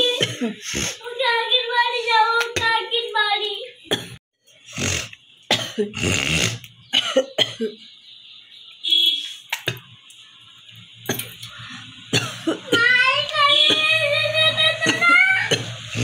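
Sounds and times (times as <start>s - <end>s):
woman coughing: 0.0s - 0.6s, 5.5s - 6.0s, 6.9s - 7.8s, 12.1s - 12.9s, 14.8s - 15.8s.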